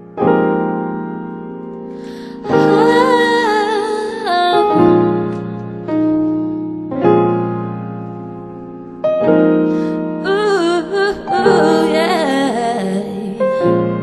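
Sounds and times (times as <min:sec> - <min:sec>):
slow piano chords: 0:00.0 - 0:14.0
woman singing: 0:02.0 - 0:05.1, 0:10.2 - 0:14.0.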